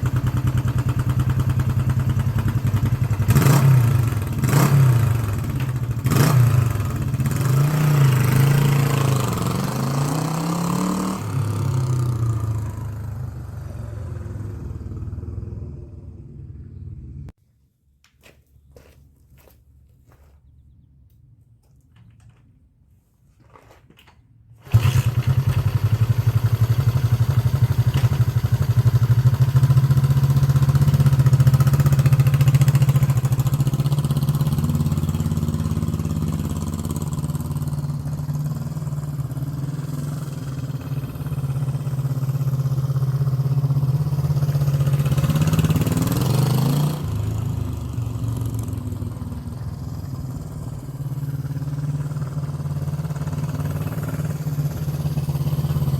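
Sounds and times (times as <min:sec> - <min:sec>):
motorcycle engine starting and running: 0:00.0 - 0:17.3, 0:23.4 - 0:55.9.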